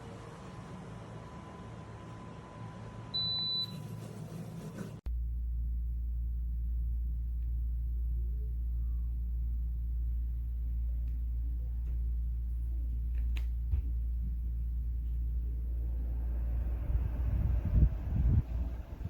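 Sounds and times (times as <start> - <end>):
tower fan airflow rumble: 5.6 - 19.0.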